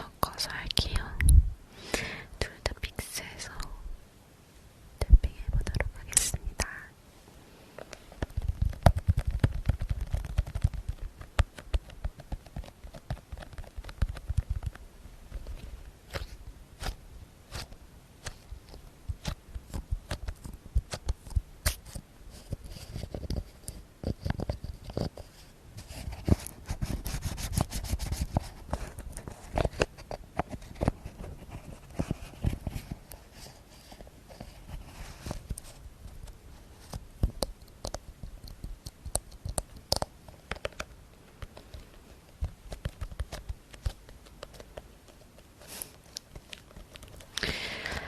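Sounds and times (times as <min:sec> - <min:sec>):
wind rumble on microphone: 0:00.8 - 0:01.6.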